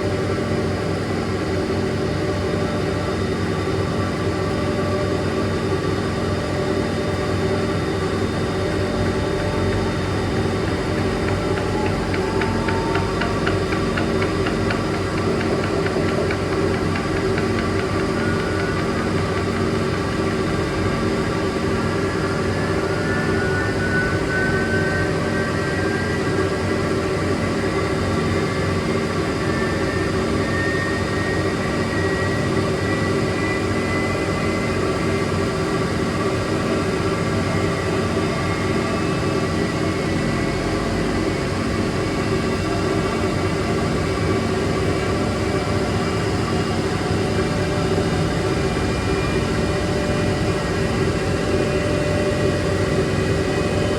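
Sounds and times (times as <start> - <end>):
washing machine motor hum: 7.4 - 27.4
faint rising whine: 17.7 - 53.9.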